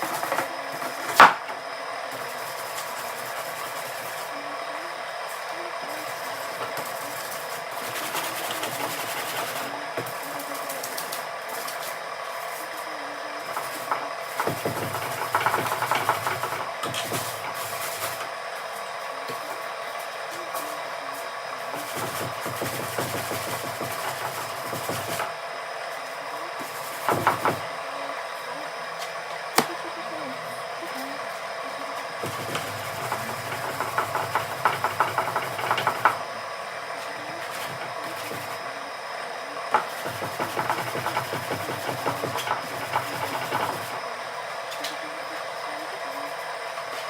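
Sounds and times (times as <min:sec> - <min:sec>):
steady background hum: 0:00.0 - 0:47.0
sanding body filler: 0:02.2 - 0:04.9, 0:05.6 - 0:18.4
sandpaper rubbing on filler: 0:06.2 - 0:09.8.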